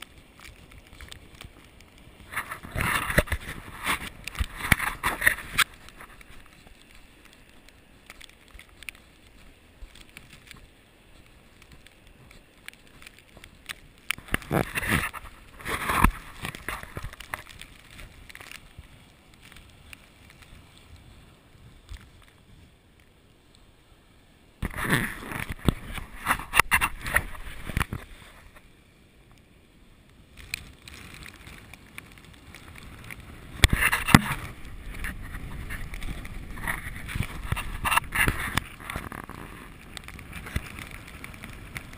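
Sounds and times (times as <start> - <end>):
wind gusting against microphone: 31.2 - 41.9.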